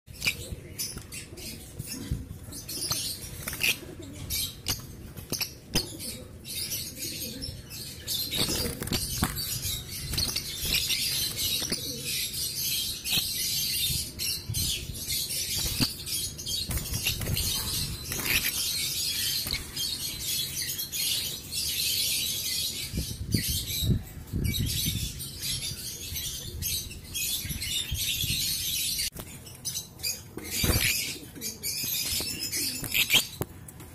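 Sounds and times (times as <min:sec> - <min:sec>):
lovebirds chattering squeaks: 0:15.3 - 0:21.2.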